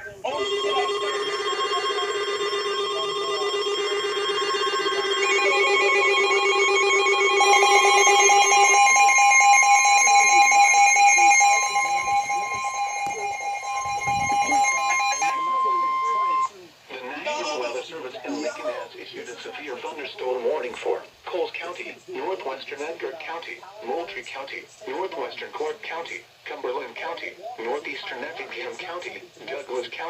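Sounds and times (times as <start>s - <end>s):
electronic alert tones: 0.3s - 16.5s.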